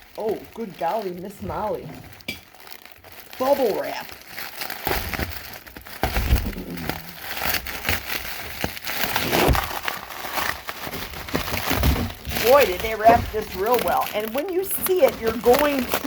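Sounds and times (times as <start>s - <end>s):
bubble wrap crinkling: 0.0s - 16.0s
dull handling thumps: 6.0s - 7.6s.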